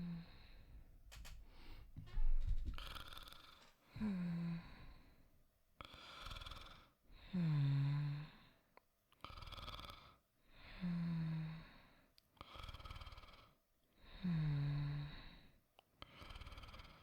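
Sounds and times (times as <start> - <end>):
person snoring softly: 12.4 - 17.0.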